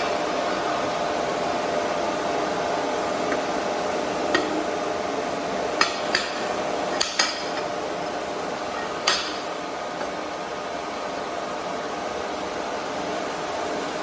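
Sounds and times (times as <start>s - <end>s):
steady machine hum: 0.0s - 14.0s
sharp metallic knocks: 5.8s - 10.2s.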